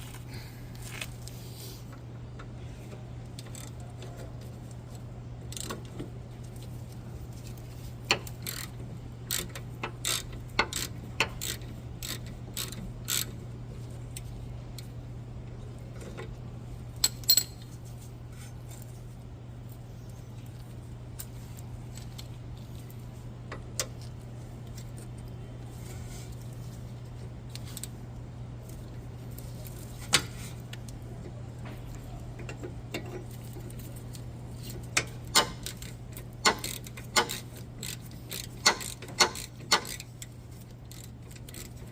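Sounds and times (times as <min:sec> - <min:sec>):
steady low hum: 0:00.0 - 0:41.9
socket ratchet clicking: 0:09.3 - 0:13.4, 0:34.6 - 0:41.9.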